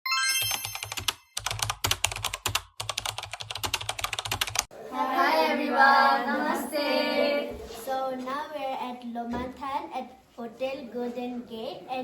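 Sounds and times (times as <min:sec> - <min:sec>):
keyboard typing clicks: 0:00.4 - 0:04.6.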